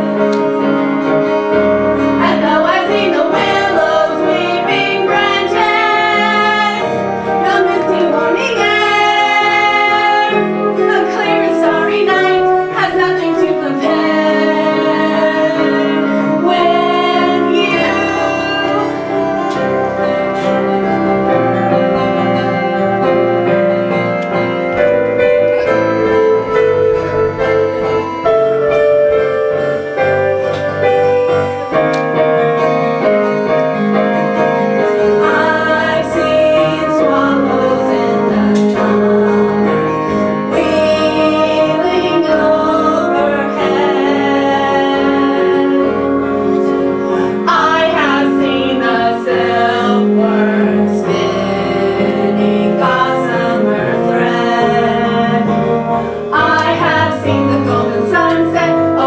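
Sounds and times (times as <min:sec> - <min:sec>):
piano accompaniment: 0:00.0 - 0:59.0
woman singing: 0:02.2 - 0:19.6, 0:40.5 - 0:46.1, 0:47.4 - 0:55.7, 0:56.3 - 0:59.0.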